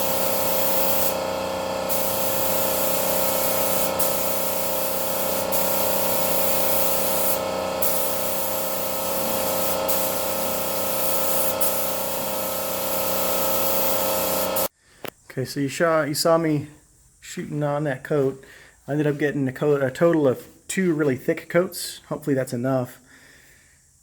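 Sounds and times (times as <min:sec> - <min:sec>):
paint spray gun hissing: 0:00.0 - 0:14.7.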